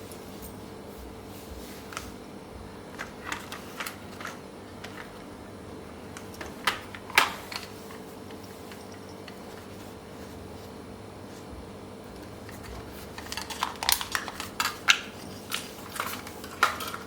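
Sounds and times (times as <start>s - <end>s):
faint steady hum: 0.0s - 17.0s
small objects clicking and tapping: 12.2s - 17.0s.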